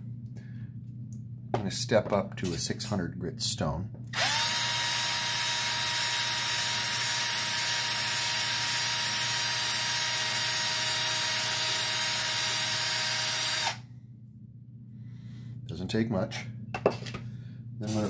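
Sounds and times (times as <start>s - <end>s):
electric drill whining: 4.1s - 13.8s.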